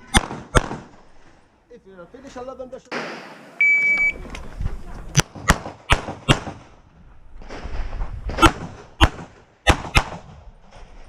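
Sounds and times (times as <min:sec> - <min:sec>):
pistol shots with echo: 0:00.0 - 0:01.0, 0:08.4 - 0:10.3
shot timer beep: 0:03.6 - 0:04.2.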